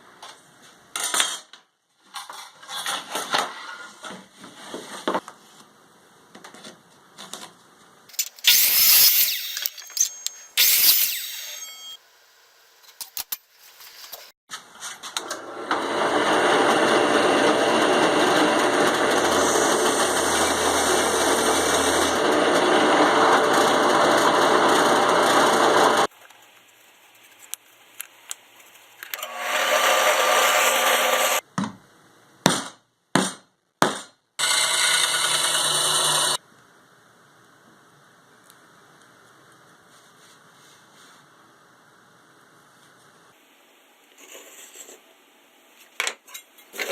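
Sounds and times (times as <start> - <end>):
power tool running: 8.2 - 12.0, 15.4 - 26.1, 29.2 - 31.4, 34.4 - 36.4.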